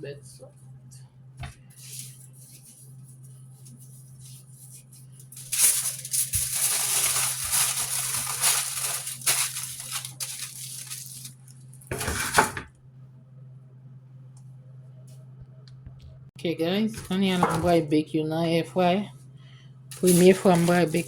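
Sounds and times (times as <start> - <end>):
dry rustling and crackling: 1.7 - 11.9, 19.9 - 21.0.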